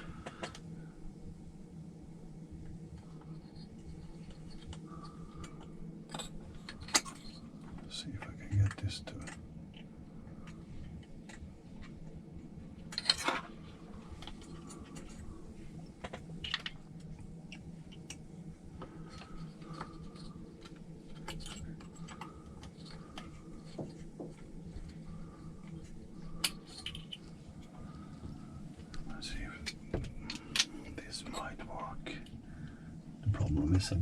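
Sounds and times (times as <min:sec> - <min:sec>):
low steady hum: 0:00.0 - 0:34.0
small parts clicking and tapping: 0:03.0 - 0:12.1, 0:12.8 - 0:13.5, 0:15.9 - 0:30.8.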